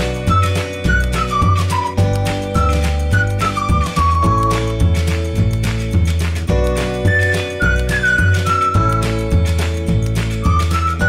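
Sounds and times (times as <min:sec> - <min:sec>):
upbeat music with strummed guitar: 0:00.0 - 0:11.0.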